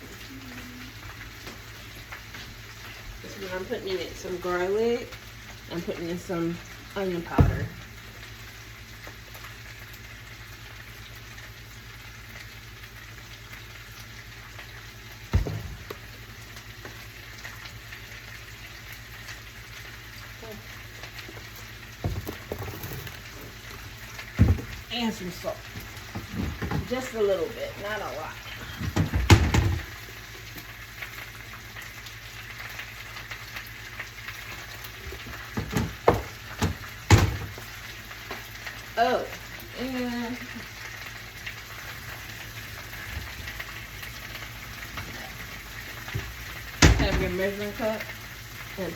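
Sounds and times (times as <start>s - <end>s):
vegetables sizzling in a pan: 0.0s - 48.9s
loud thump: 15.3s - 15.9s.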